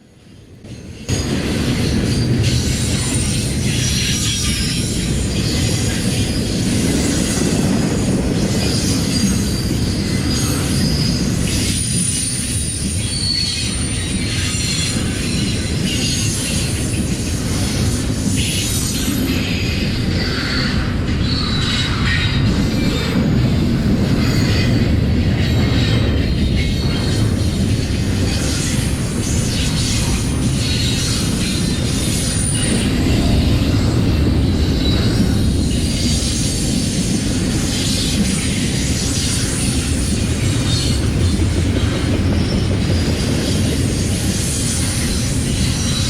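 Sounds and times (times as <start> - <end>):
train cars rumbling on rails: 0.0 - 46.0
high-pitched wheel squeal: 8.6 - 16.6.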